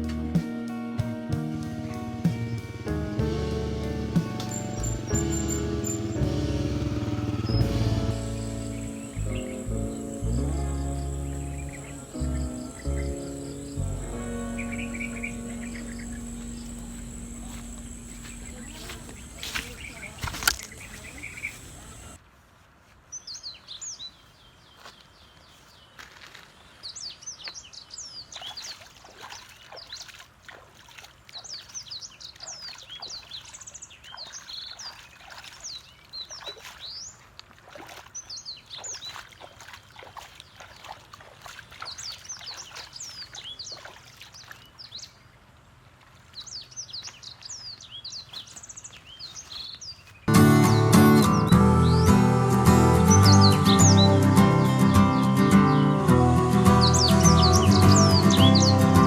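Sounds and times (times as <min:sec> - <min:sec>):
faint outdoor background: 0:00.0 - 0:28.4, 0:42.1 - 0:59.0
small birds twittering: 0:03.8 - 0:22.2, 0:31.4 - 0:37.2, 0:37.9 - 0:45.2, 0:46.4 - 0:59.0.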